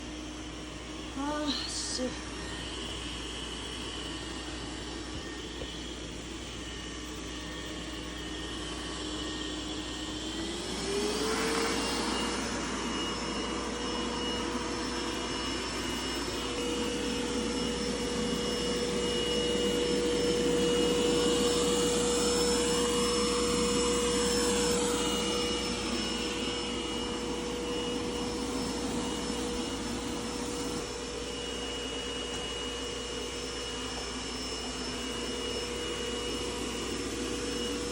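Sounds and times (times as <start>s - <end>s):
robot vacuum cleaner whining: 0.0s - 37.9s.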